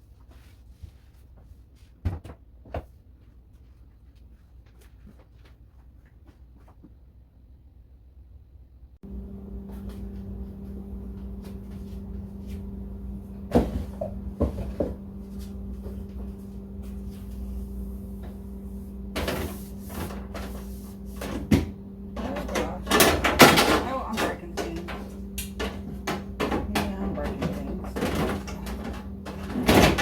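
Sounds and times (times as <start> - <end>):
steady low hum: 7.8 - 30.0
cupboard doors opening and closing: 19.1 - 30.0.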